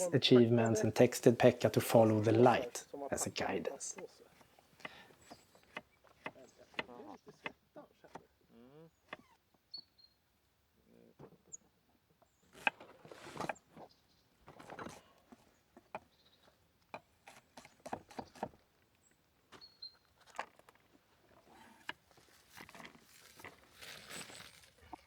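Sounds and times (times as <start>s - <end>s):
rustling and scraping of handled things: 12.4s - 16.0s, 16.9s - 25.0s.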